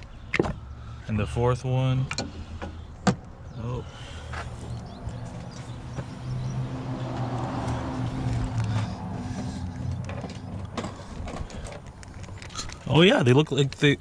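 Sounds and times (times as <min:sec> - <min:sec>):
vehicle engine running: 0:03.9 - 0:12.5.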